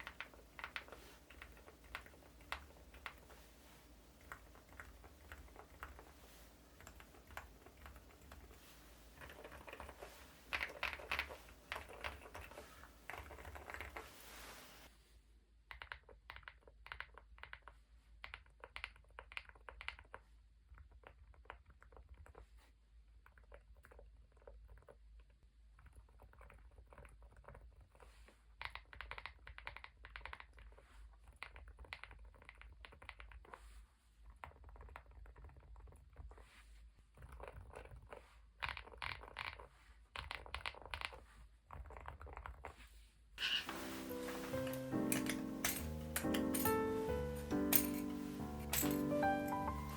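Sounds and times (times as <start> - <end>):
muffled keyboard typing: 0.0 - 14.5, 37.2 - 42.7, 43.7 - 49.9.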